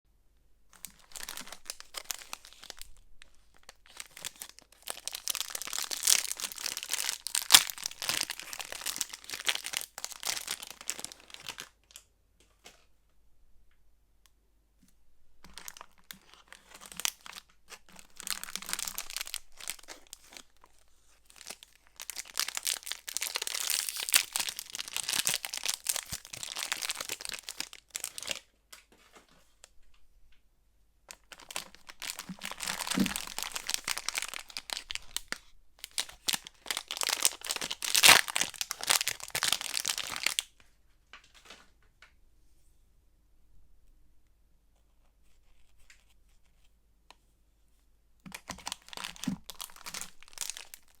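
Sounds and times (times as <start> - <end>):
wrapper crinkling and tearing: 0.7 - 11.8, 15.4 - 28.5, 31.1 - 40.5, 48.3 - 51.0.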